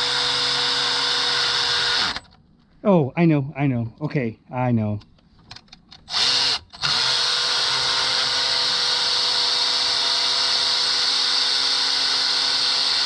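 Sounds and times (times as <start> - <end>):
power drill whining: 0.0 - 2.3, 6.1 - 13.0.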